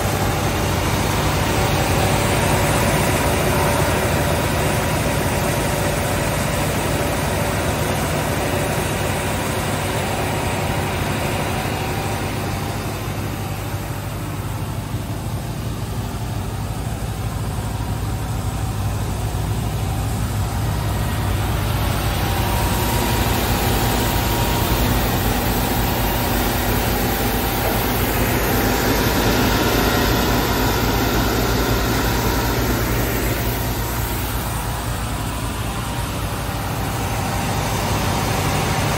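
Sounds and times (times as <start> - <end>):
sander motor hum: 15.4 - 38.9.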